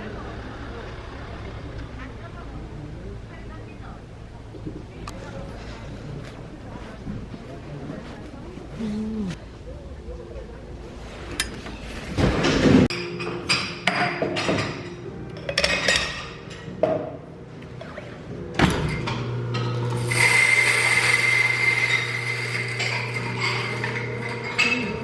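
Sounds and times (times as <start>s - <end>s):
machine humming: 18.4s - 25.0s.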